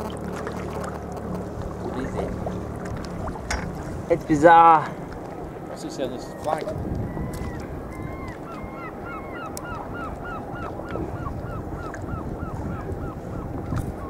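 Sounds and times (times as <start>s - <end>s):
water noise: 0.0s - 14.0s
wind: 0.0s - 14.0s
bird piping calls: 5.7s - 14.0s.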